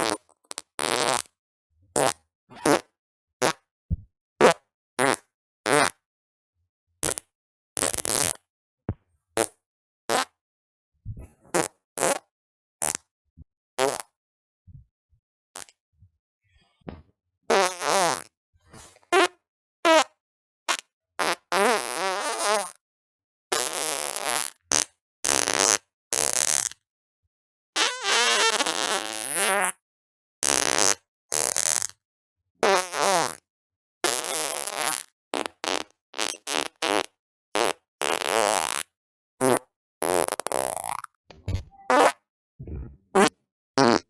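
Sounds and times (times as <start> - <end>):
farts: 0.0 - 1.4, 2.0 - 3.7, 4.4 - 6.0, 7.0 - 8.5, 9.4 - 10.4, 11.5 - 13.1, 13.8 - 14.2, 17.5 - 18.3, 23.6 - 26.8, 27.8 - 29.8, 30.4 - 32.0, 32.6 - 33.4, 34.0 - 44.0.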